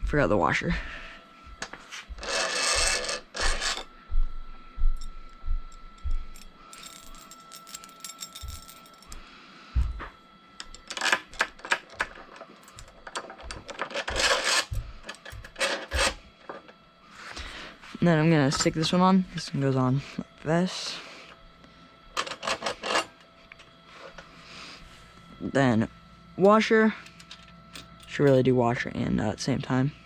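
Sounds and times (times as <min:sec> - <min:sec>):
small metal parts clinking: 0:02.2 - 0:03.9, 0:06.3 - 0:09.2, 0:27.0 - 0:28.4.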